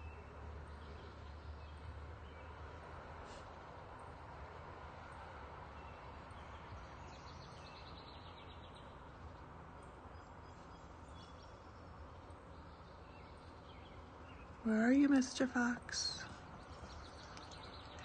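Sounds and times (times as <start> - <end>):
small birds chirping: 5.1 - 18.0.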